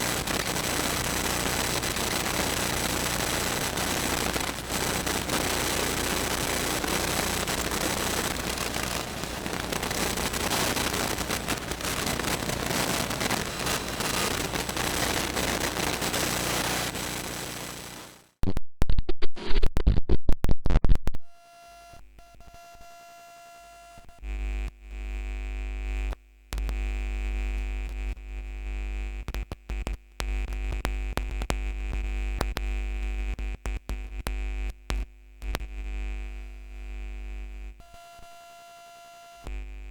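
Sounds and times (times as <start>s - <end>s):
stuttering glitch bursts: 0.0s - 18.2s
low electrical hum and buzz: 0.0s - 18.3s, 20.8s - 39.9s
static hiss and crackle: 0.0s - 18.4s, 26.1s - 26.9s, 29.2s - 35.8s.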